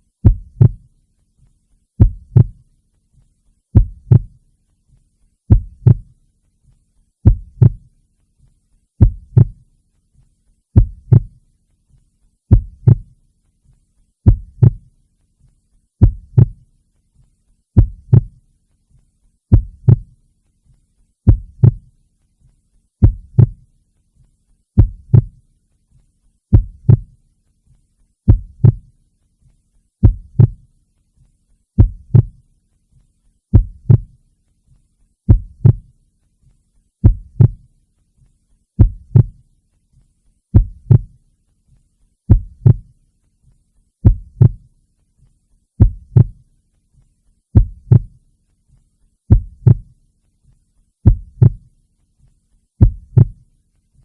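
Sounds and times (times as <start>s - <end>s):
heartbeat thumps: 0.2s - 0.9s, 2.0s - 2.7s, 3.7s - 4.4s, 5.5s - 6.2s, 7.2s - 8.0s, 9.0s - 9.7s, 10.8s - 11.4s, 12.5s - 13.2s, 14.2s - 14.9s, 16.0s - 16.7s, 17.8s - 18.4s, 19.5s - 20.2s, 21.2s - 21.9s, 23.0s - 23.7s, 24.8s - 25.4s, 26.5s - 27.2s, 28.3s - 29.0s, 30.0s - 30.7s, 31.8s - 32.4s, 33.5s - 34.2s, 35.3s - 36.0s, 37.0s - 37.7s, 38.8s - 39.4s, 40.5s - 41.2s, 42.3s - 43.0s, 44.0s - 44.7s, 45.8s - 46.5s, 47.5s - 48.2s, 49.3s - 50.0s, 51.0s - 51.7s, 52.8s - 53.4s.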